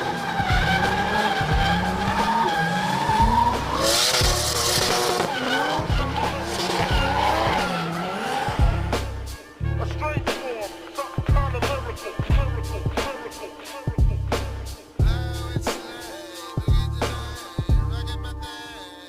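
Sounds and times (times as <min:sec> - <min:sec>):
tyres squealing: 0:00.0 - 0:09.2
car engine revving: 0:00.0 - 0:15.4
background music: 0:00.0 - 0:19.0.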